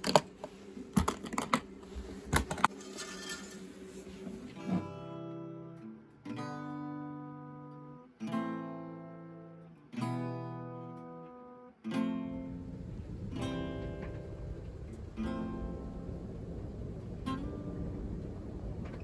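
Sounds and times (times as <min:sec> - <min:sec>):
acoustic guitar strumming: 0:04.5 - 0:19.0.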